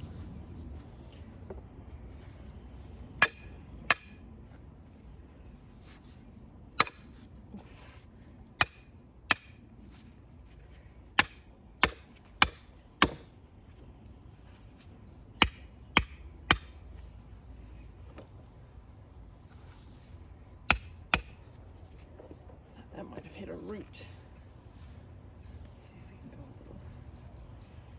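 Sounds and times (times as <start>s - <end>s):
hammer striking metal hook: 3.2s - 4.2s.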